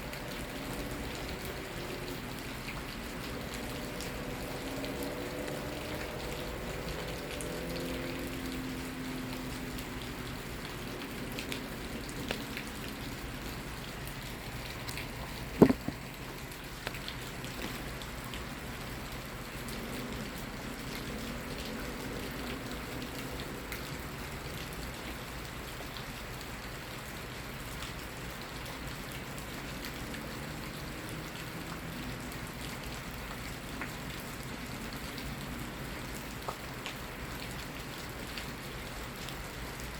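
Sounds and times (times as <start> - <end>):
steady rain: 0.0 - 39.9
drops ticking on surface: 14.8 - 16.2.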